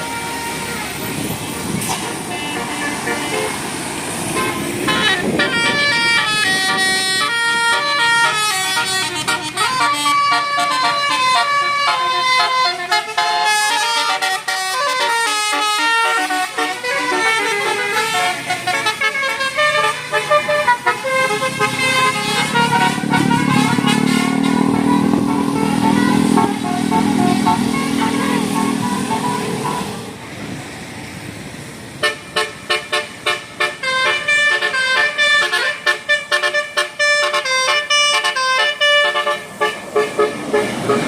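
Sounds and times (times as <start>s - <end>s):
musical air horn playing a tune: 0.0s - 1.0s, 4.3s - 30.1s, 32.0s - 41.0s
low engine drone: 21.4s - 30.3s.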